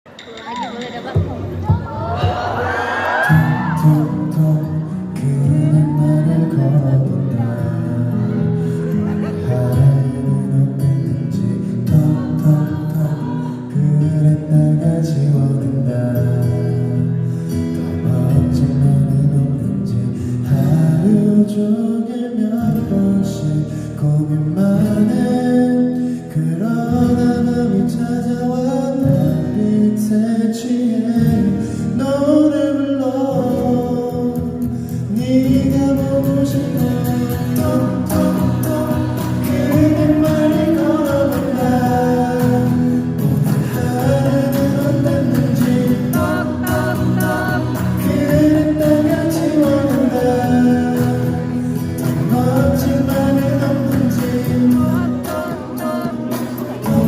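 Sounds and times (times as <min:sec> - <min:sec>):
man singing pop song: 0:00.1 - 0:57.0
amplified instrumental backing: 0:33.6 - 0:57.0.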